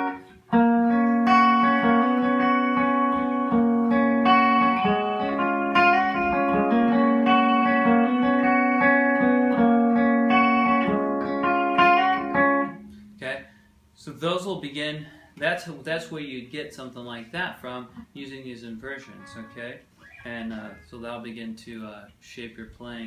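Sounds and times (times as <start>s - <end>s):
guitar chords ringing: 0.0s - 13.9s, 18.8s - 21.1s.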